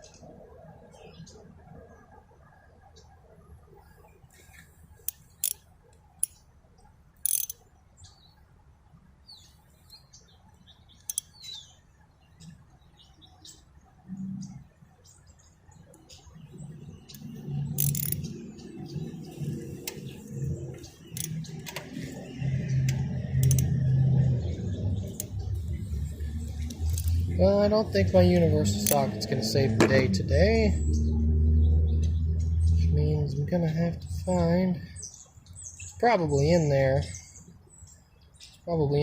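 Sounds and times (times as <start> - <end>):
socket wrench clicks and taps: 7.2 - 7.6, 17.8 - 18.3, 22.9 - 23.7.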